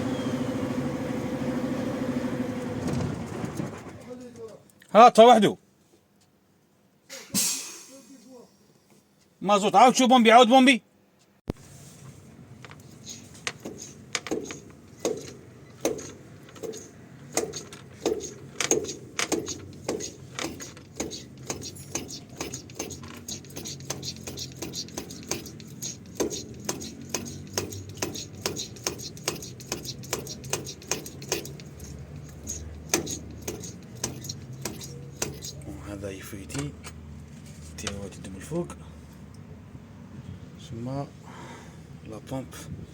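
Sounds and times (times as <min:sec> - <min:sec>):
hand fuel pump clicking: 0:12.7 - 0:35.7.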